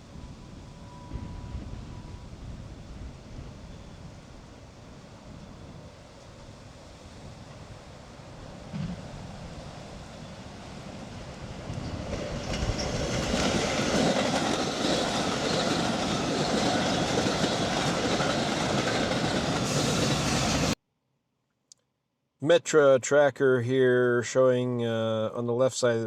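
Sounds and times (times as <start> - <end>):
train wheels running over rails: 5.0 - 20.8.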